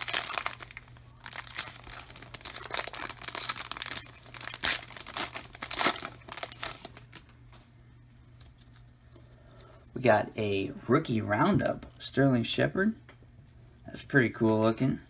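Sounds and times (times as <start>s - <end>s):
wrapper tearing and crinkling: 0.0s - 7.3s.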